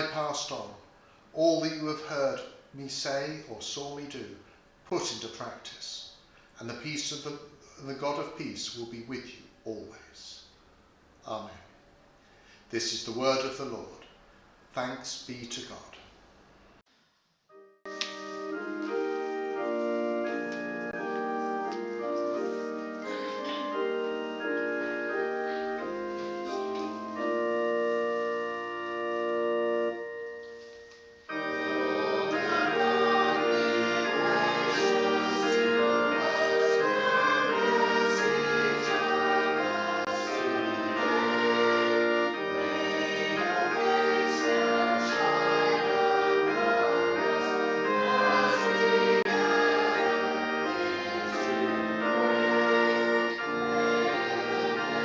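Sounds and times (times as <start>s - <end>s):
congregation singing a hymn: 0.0s - 5.8s, 18.5s - 30.7s, 31.3s - 55.0s
church organ playing: 0.0s - 6.0s, 17.5s - 55.0s.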